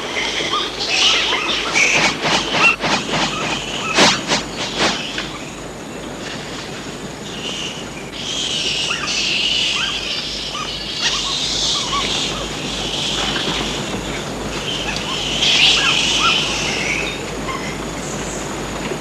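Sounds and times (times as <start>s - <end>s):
high insect drone: 0.0s - 18.6s
bird chirps: 8.2s - 13.6s.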